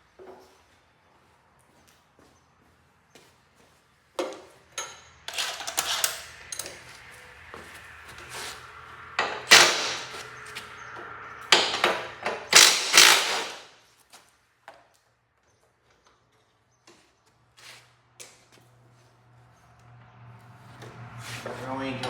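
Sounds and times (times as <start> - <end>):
tools working on bolts: 4.8 - 7.0, 9.2 - 10.4, 11.5 - 13.7.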